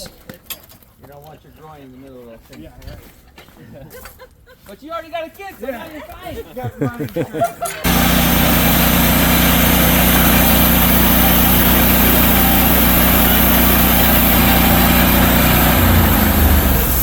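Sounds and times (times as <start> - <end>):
saw cutting wood hiss: 7.8 - 17.0
sawmill engine running: 7.8 - 17.0.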